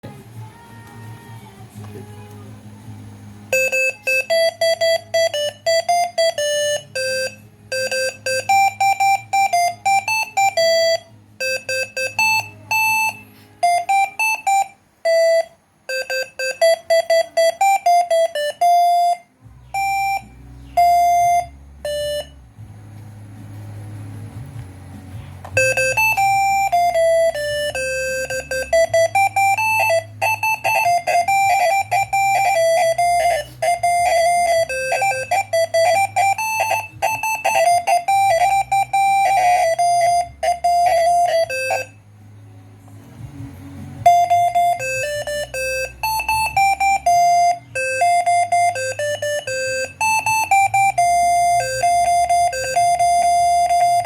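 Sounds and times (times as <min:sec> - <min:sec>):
air horn playing a melody: 0:25.6 - 0:42.0.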